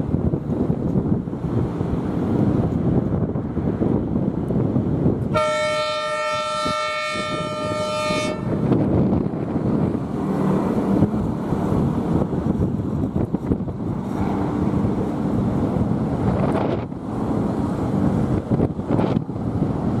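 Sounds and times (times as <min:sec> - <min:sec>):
train horn blast: 0:05.3 - 0:08.7.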